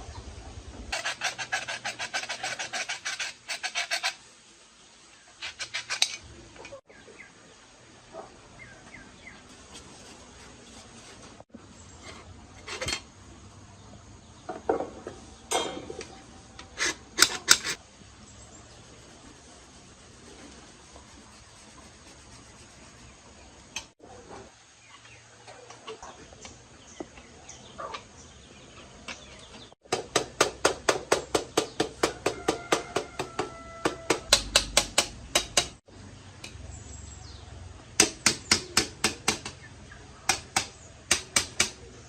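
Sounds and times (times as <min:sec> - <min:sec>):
hand tool scraping metal: 0:00.9 - 0:04.2, 0:05.4 - 0:06.3, 0:16.6 - 0:17.8, 0:31.6 - 0:35.8.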